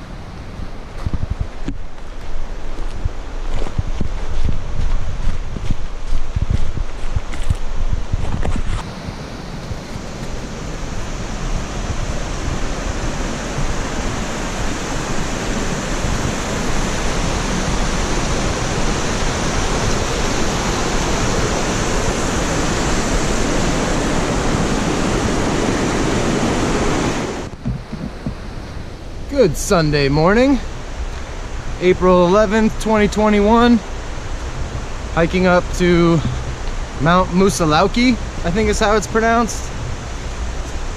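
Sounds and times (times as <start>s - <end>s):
mountain stream rushing: 0.0s - 40.9s.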